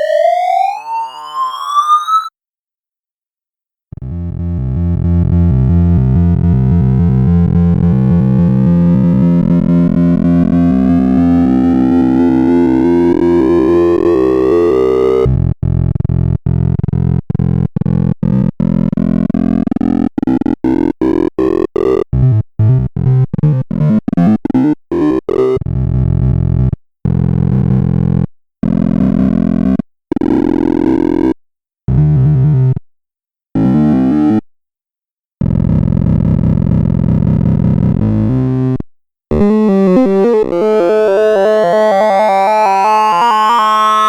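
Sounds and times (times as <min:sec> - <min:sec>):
buzzing synthesized tones: 0:04.0 - 0:18.6.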